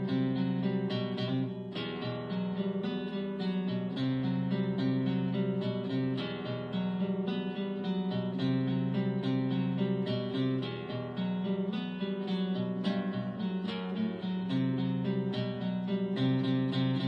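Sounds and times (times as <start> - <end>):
acoustic guitar melody: 0.0 - 17.0.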